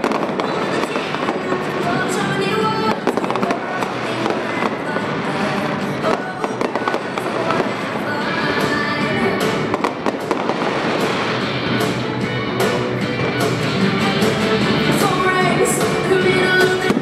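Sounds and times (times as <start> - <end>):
fireworks bursting and crackling: 0.0 - 17.0
loud music: 0.0 - 17.0.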